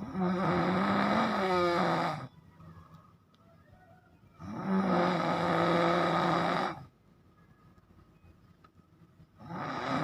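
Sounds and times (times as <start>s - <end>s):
person snoring heavily: 0.0s - 2.3s, 4.4s - 6.9s, 9.4s - 10.0s.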